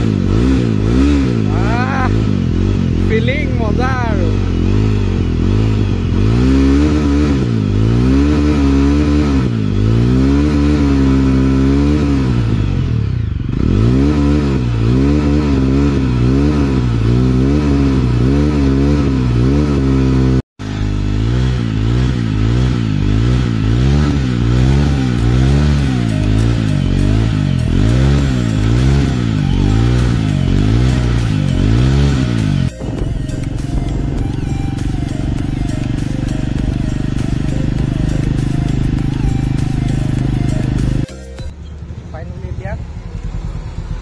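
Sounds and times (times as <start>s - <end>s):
motorcycle engine running: 0.0s - 44.0s.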